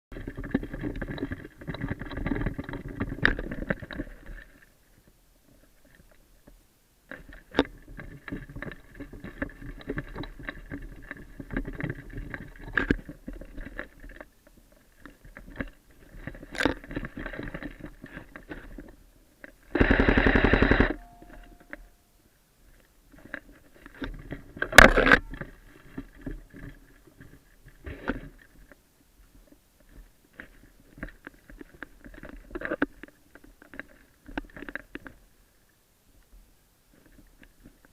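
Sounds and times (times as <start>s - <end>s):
rustling and movement: 0.1s - 37.9s.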